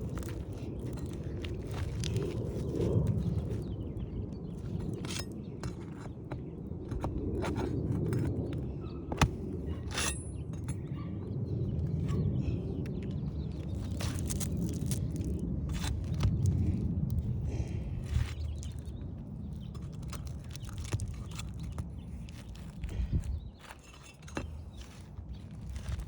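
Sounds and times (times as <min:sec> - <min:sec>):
low steady rumble: 0:00.0 - 0:26.0
shingle being pried loose: 0:04.5 - 0:11.0, 0:13.8 - 0:16.8, 0:18.0 - 0:26.0
staples breaking: 0:13.8 - 0:16.6, 0:19.6 - 0:23.0.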